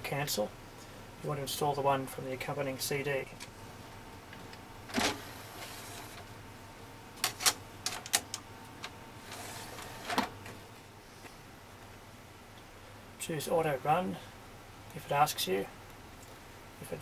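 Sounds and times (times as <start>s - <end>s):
cd drive whirring: 4.3s - 6.4s, 7.2s - 10.7s.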